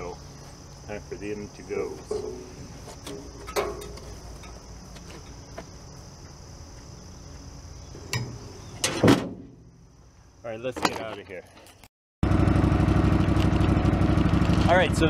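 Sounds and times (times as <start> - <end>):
crickets chirring: 0.0 - 11.9
loud thump: 8.1 - 9.8.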